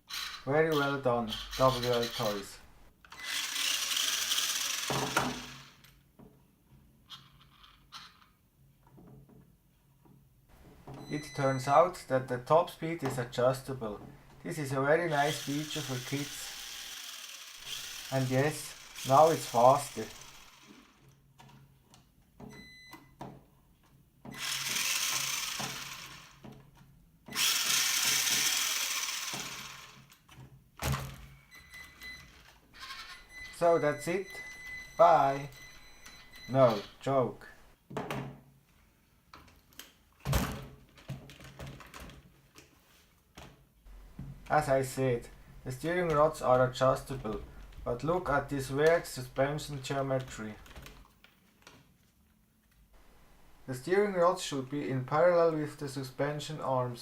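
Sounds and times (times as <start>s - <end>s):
electric motor and gears whirring: 0.0s - 6.0s, 15.0s - 21.1s, 24.4s - 26.6s, 27.3s - 30.2s, 32.8s - 37.7s.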